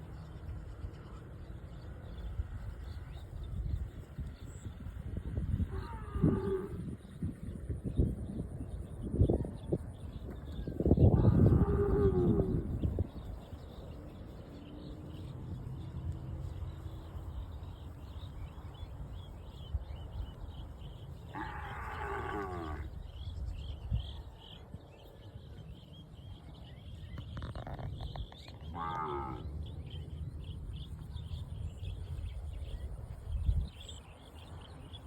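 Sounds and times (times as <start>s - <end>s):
steady low rumble: 0.0s - 21.8s
cows mooing: 5.6s - 6.8s, 11.0s - 12.8s, 21.3s - 23.0s, 28.7s - 29.5s.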